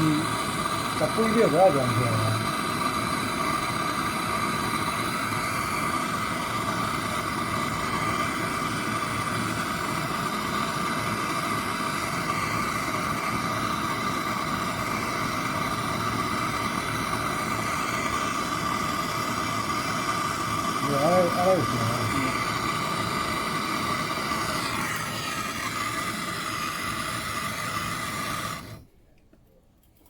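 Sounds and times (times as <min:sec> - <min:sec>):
mechanical hum with whine: 0:00.0 - 0:30.0.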